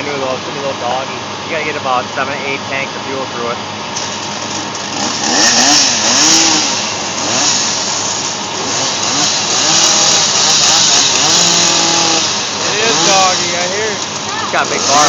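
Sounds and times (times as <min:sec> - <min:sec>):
chainsaw running hard: 0:04.0 - 0:15.0.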